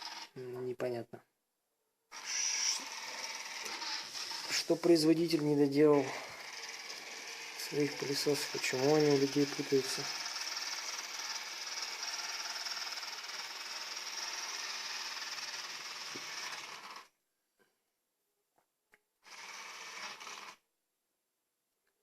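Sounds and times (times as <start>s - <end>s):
robot vacuum cleaner running: 2.1s - 17.1s, 19.3s - 20.6s.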